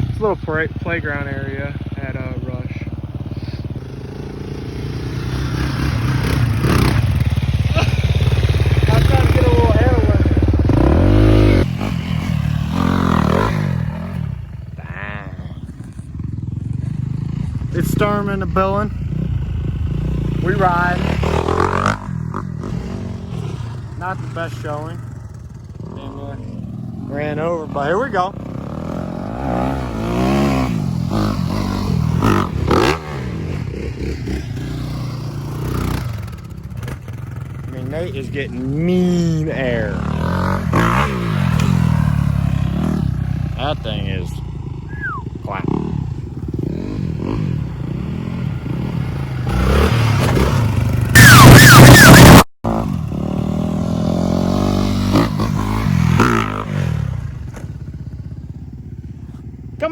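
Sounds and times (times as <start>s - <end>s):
off-road engine revving: 0.0s - 57.7s
loud engine cutting off: 4.3s - 14.6s, 46.6s - 57.6s.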